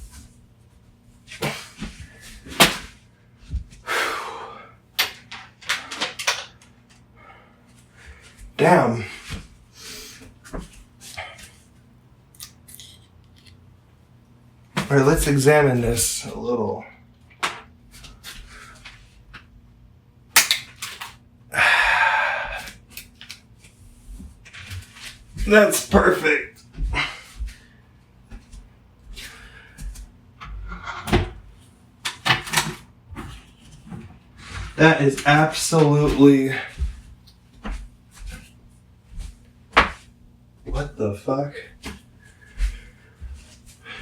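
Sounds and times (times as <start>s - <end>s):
plastic snapping and cracking: 20.4s - 21.2s.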